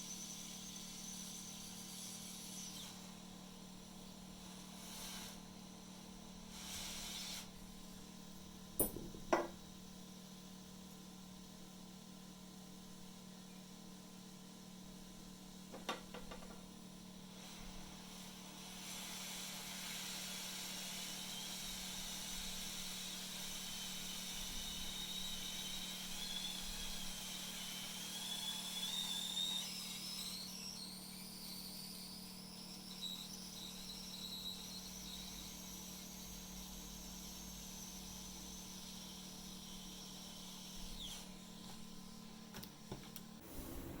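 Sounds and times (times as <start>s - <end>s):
hot-air station hissing: 4.3s - 7.8s, 17.3s - 26.3s, 43.4s - 44.0s.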